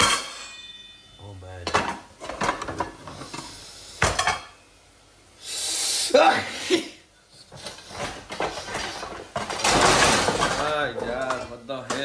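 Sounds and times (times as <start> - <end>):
utensils and pots clattering: 0.0 - 1.0, 1.6 - 4.6, 7.3 - 12.0.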